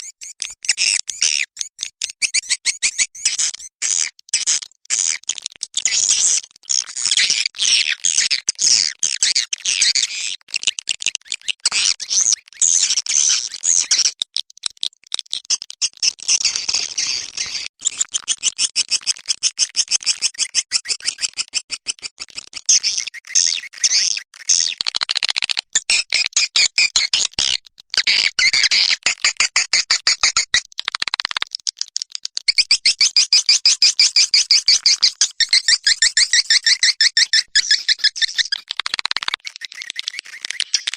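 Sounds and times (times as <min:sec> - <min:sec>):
rapid bird chittering: 0:00.0 - 0:03.8, 0:22.7 - 0:24.8, 0:32.5 - 0:40.9
swiftlet chirps and twitters: 0:00.0 - 0:03.8, 0:22.7 - 0:24.7, 0:34.0 - 0:40.9.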